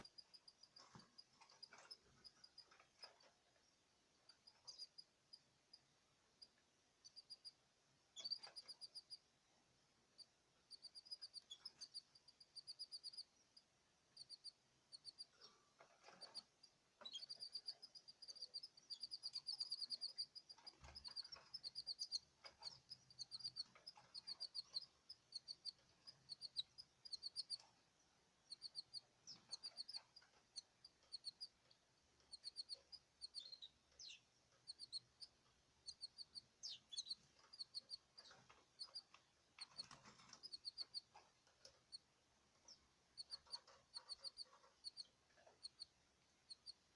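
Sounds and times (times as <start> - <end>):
small cage birds chirping: 0.0 - 46.9.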